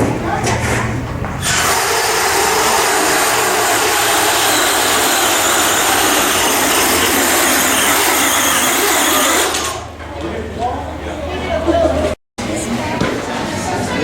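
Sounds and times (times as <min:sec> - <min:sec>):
small two-stroke engine screaming: 0:01.4 - 0:09.9.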